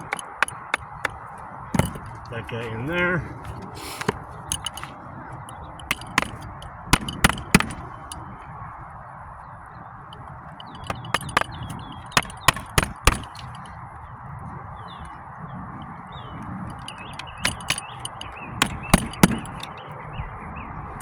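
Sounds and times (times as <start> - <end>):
hammer knocks on wood shake: 1.8 - 2.3, 5.9 - 7.9, 10.8 - 13.6, 16.9 - 19.7.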